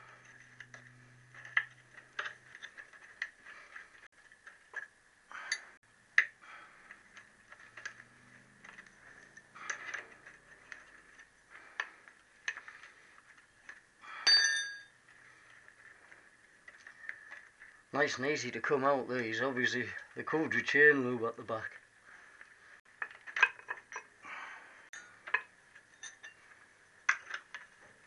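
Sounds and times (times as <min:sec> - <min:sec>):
ringing metallic clink: 0:14.2 - 0:14.9
spanners clinking on bolts: 0:14.2 - 0:15.0, 0:25.0 - 0:26.4.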